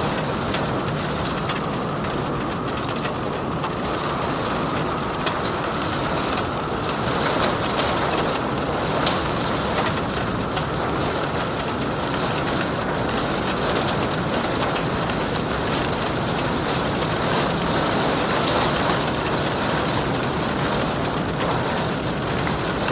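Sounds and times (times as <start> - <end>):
steady rain falling: 0.0 - 22.9
wind: 0.0 - 22.9
raindrop hits ticking: 0.1 - 22.9.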